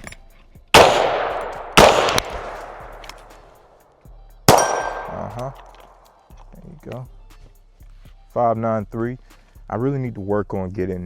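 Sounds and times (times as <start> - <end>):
pistol shot echoing: 0.8 - 3.8, 4.5 - 6.0
rifle shots echoing: 0.8 - 3.8, 4.5 - 6.0.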